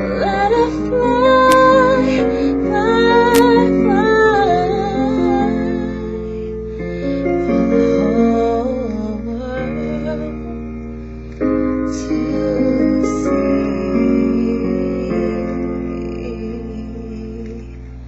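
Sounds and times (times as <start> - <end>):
woman singing: 0.0 - 6.7, 7.8 - 10.7
sustained piano chords: 0.0 - 18.0.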